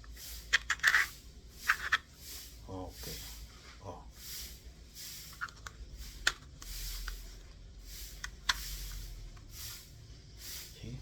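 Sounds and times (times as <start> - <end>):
plastic parts rustling: 0.0 - 2.1, 5.3 - 8.7.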